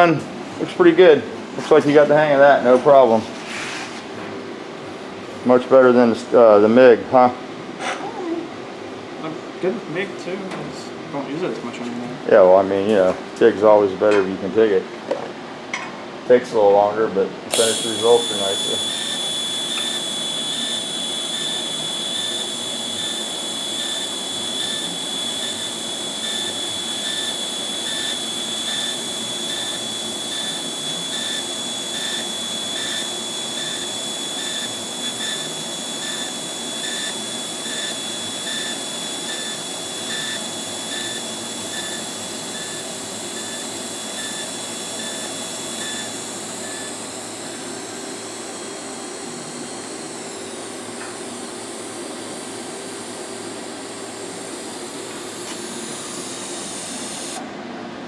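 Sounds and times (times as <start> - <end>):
welding arc pulsing whine: 17.5 - 57.5.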